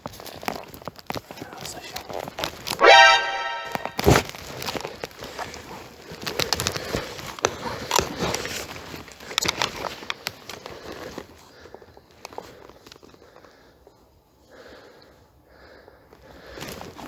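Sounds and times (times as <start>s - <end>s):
footsteps through dry leaves and twigs: 0.0s - 2.8s.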